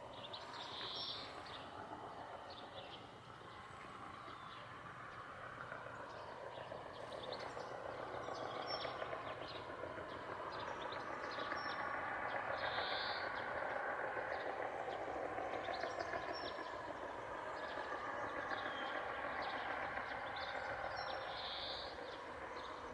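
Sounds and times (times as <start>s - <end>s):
bird chirps: 0.1s - 1.8s, 12.6s - 13.4s, 20.4s - 22.0s.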